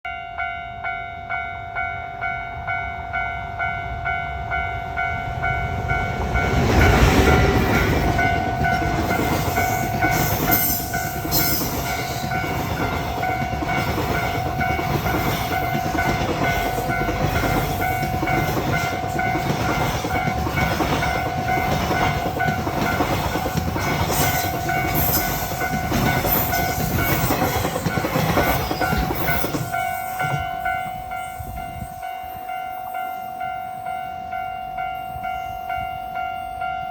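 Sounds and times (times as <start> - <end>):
level-crossing alarm ringing: 0.1 - 36.9
train rumbling past: 2.4 - 36.9
wheels clacking over rail joints: 6.2 - 30.7.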